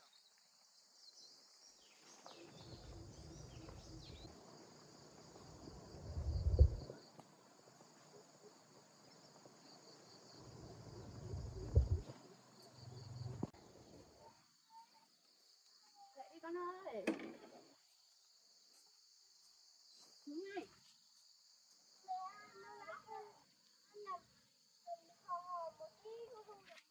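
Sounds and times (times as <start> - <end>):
insects chirping in pulsing trill: 0.2 - 16.3
low rumbling thumps: 6.0 - 6.9, 10.9 - 12.0.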